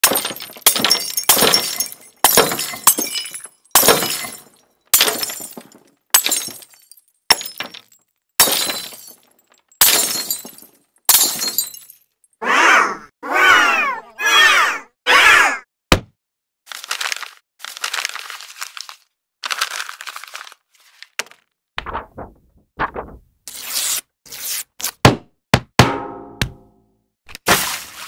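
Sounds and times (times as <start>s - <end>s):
glass shattering: 0.0s - 12.2s.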